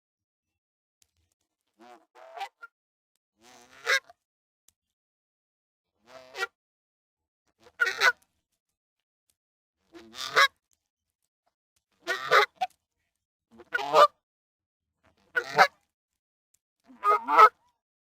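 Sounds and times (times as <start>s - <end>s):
goose honking: 3.6s - 4.1s, 7.6s - 8.2s, 10.0s - 10.5s, 12.0s - 12.6s, 13.6s - 14.2s, 15.4s - 15.8s, 17.0s - 17.6s.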